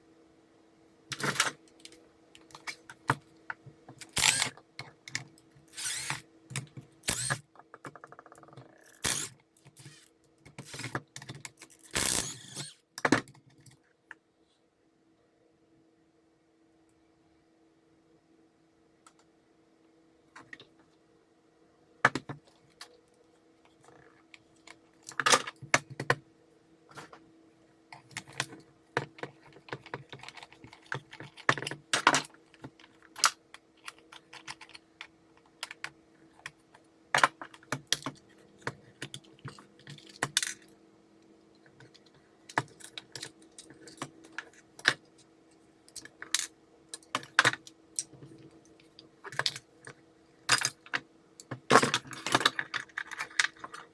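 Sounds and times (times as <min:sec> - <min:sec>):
faint steady hum: 0:00.0 - 0:53.9
plastic and metal parts clicking: 0:28.0 - 0:36.6.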